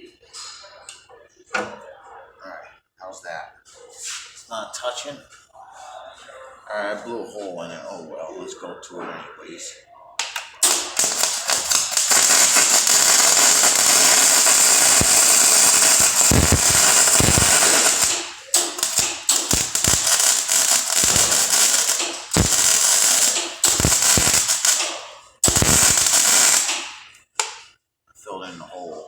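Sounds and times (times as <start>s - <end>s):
welding arc crackling and sputtering: 10.2s - 27.6s.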